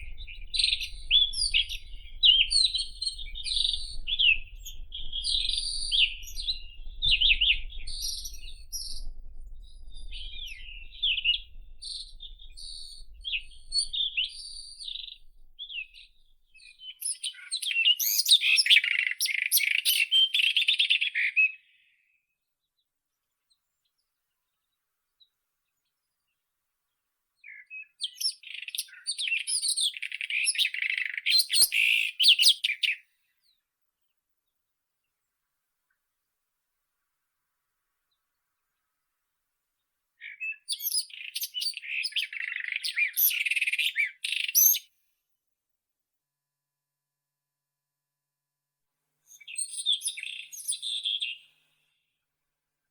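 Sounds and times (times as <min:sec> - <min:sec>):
robin singing: 0:00.0 - 0:21.6, 0:27.4 - 0:33.0, 0:40.2 - 0:44.9, 0:49.3 - 0:51.6.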